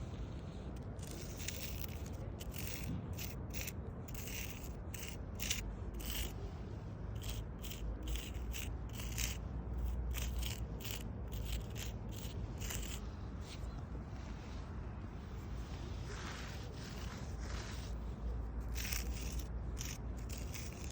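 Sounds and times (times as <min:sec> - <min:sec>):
low outdoor rumble: 0:00.0 - 0:20.9.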